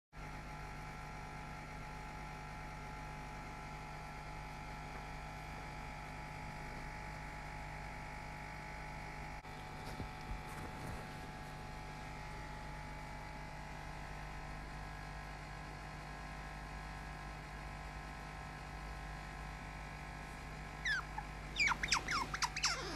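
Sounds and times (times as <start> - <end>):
electrical hum: 1.5 - 14.8, 18.6 - 22.9.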